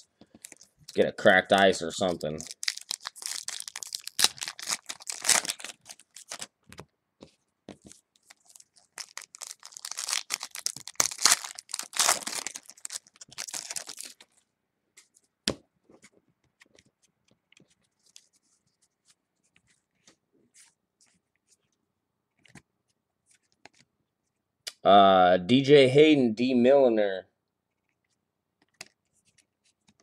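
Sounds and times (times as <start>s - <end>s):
wrappers tearing and crinkling: 2.0s - 6.5s, 8.2s - 14.3s.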